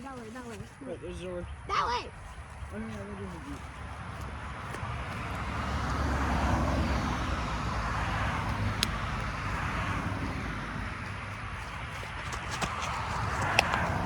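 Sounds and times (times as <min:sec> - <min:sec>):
car passing by: 0:03.9 - 0:14.0.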